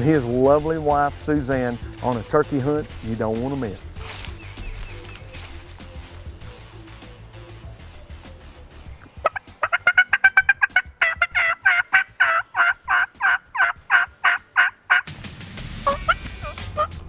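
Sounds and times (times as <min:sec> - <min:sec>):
turkey yelping: 0:07.5 - 0:15.1, 0:15.9 - 0:16.9.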